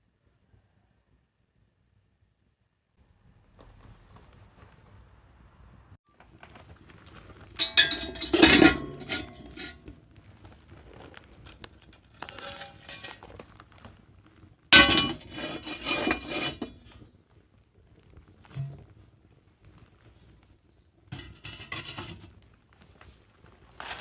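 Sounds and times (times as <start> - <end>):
metal cookware clattering: 7.6 - 9.9, 12.1 - 13.4, 14.7 - 17.0, 18.5 - 18.9, 21.1 - 22.3.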